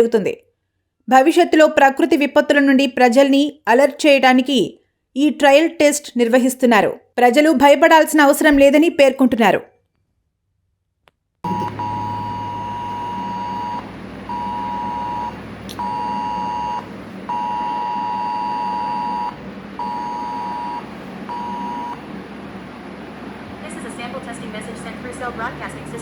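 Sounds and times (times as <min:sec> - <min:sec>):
phone emergency alert tones: 0:11.5 - 0:22.0
low hum: 0:11.5 - 0:26.0.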